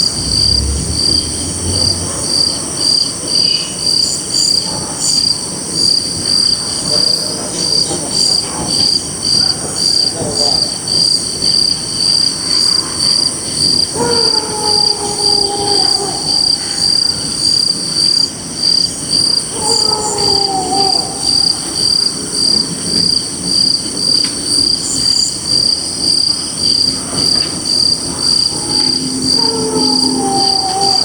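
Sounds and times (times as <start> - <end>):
drawn-out falling tone: 0.0 - 2.6, 28.2 - 31.0
crickets chirping: 0.0 - 31.0
high insect trill: 24.8 - 31.0.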